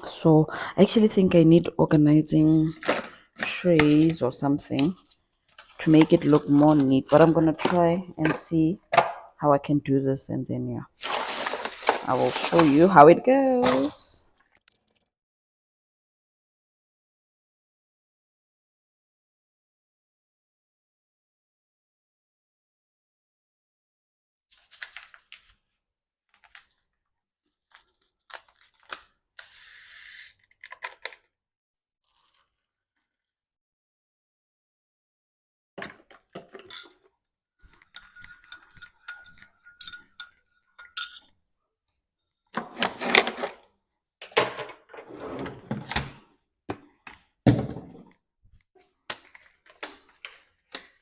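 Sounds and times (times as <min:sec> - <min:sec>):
items clattering in a cupboard: 0:11.0 - 0:12.9, 0:35.8 - 0:37.1, 0:42.5 - 0:46.3
medicine packets clicking and rustling: 0:11.0 - 0:12.9
packaging rustling or tearing: 0:11.0 - 0:12.9.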